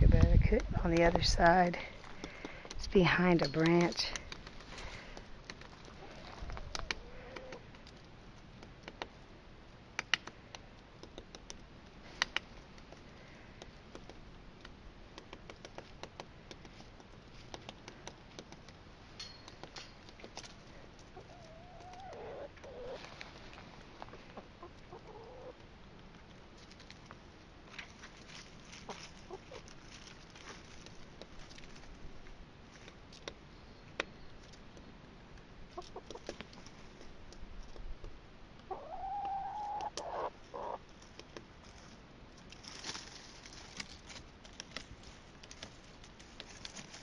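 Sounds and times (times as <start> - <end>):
sharp clicks and taps: 0.2 - 5.7, 6.6 - 9.2, 10.0 - 11.6, 12.2 - 13.0, 13.6 - 20.5.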